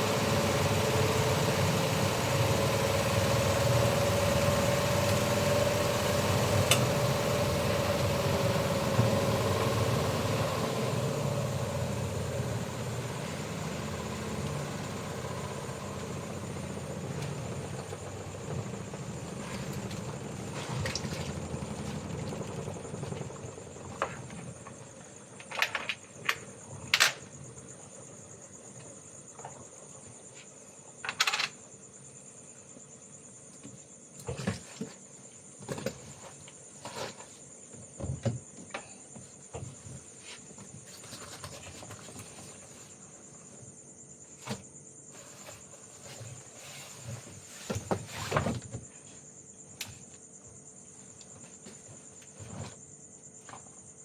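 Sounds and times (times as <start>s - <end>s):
low engine rumble: 0.0s - 25.3s
insects calling: 10.1s - 54.0s.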